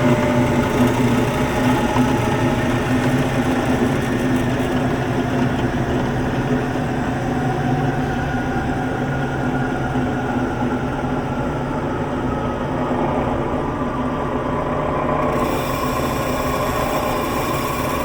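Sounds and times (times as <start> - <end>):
drill press motor humming: 0.0 - 6.1, 14.7 - 18.0.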